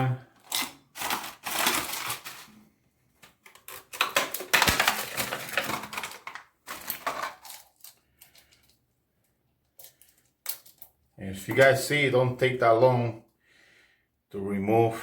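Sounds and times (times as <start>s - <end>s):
plastic parts clicking and clattering: 0.3s - 2.6s, 3.2s - 8.8s, 9.6s - 11.8s.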